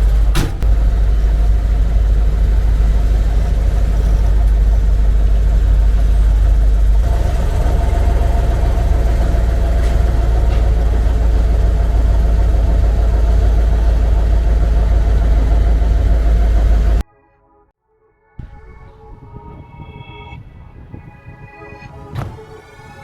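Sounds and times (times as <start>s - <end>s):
vehicle engine rumbling: 0.0s - 17.0s.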